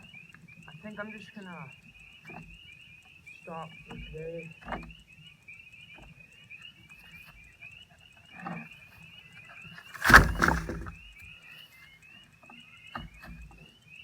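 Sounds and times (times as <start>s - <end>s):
thump and clatter: 9.9s - 11.0s.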